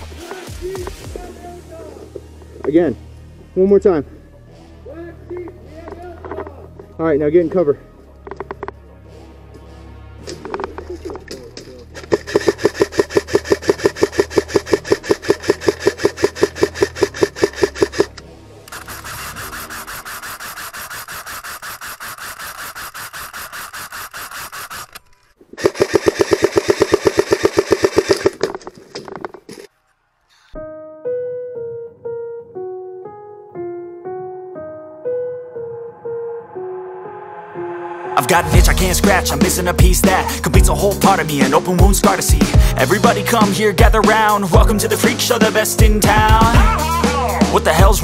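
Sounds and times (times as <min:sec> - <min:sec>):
airsoft guns firing full-auto: 0:25.6 - 0:28.5
keyboard music notes: 0:30.6 - 0:48.0.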